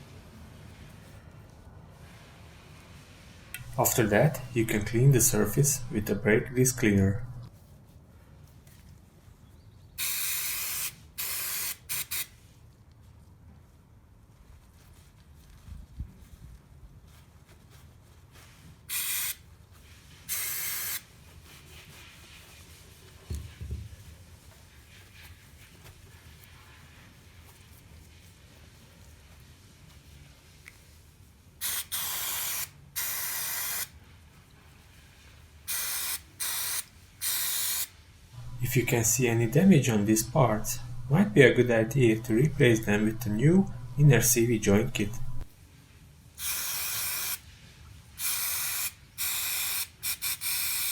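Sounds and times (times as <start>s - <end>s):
aerosol spraying bursts: 10.0s - 12.3s, 18.9s - 19.4s, 20.3s - 21.0s, 31.6s - 33.9s, 35.7s - 45.4s, 48.2s - 50.9s.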